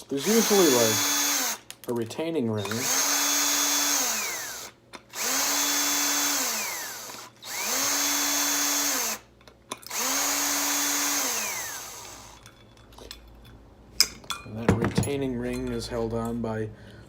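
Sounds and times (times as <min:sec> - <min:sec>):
power drill whining: 0:00.0 - 0:01.6, 0:02.6 - 0:09.2, 0:09.8 - 0:12.4.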